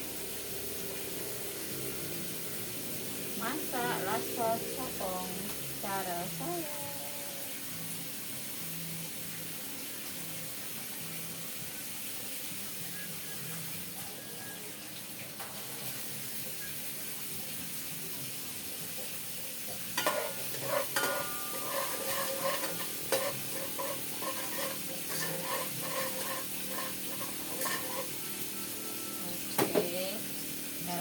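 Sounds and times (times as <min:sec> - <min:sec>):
onions sizzling in oil: 0:00.0 - 0:31.0
utensil stirring and scraping pan: 0:20.0 - 0:29.9.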